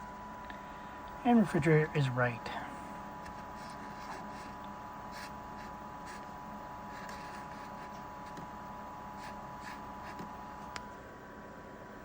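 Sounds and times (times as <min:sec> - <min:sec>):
steady hum: 0:00.0 - 0:12.0
thin steady whine: 0:00.0 - 0:12.0
marker scratching on plastic: 0:03.3 - 0:06.3, 0:06.9 - 0:08.5, 0:09.2 - 0:10.3.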